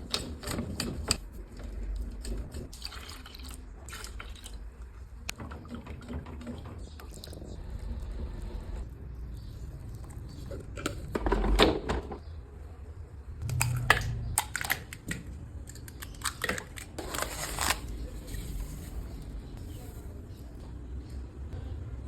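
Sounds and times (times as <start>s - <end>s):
steady low hum: 12.2s - 22.0s
rustling and crinkling: 15.7s - 20.1s.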